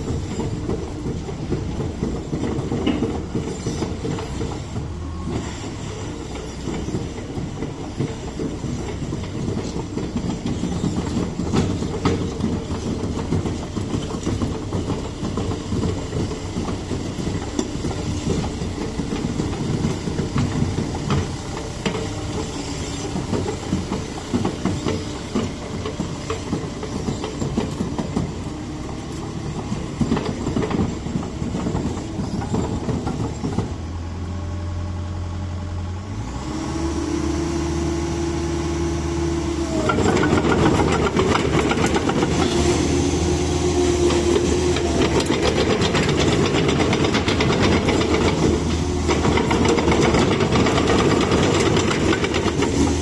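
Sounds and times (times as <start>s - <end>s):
mini excavator engine running: 0.0s - 53.0s
mechanical clatter and knocking: 6.3s - 33.8s, 39.8s - 42.7s, 44.0s - 53.0s.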